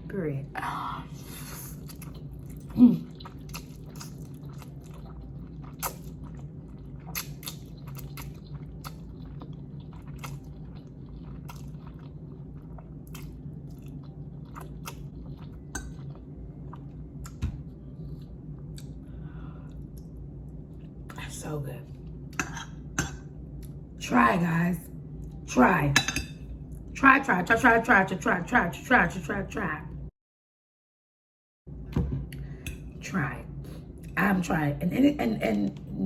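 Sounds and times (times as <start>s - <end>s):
person chewing noodles: 1.2s - 20.2s.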